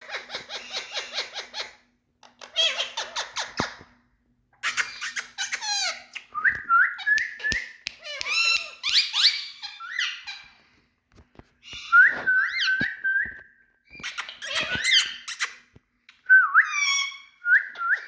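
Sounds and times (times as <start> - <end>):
parrots chattering and squawking: 0.0 - 4.0, 4.6 - 6.4, 7.0 - 10.6, 13.9 - 15.7, 16.6 - 18.0.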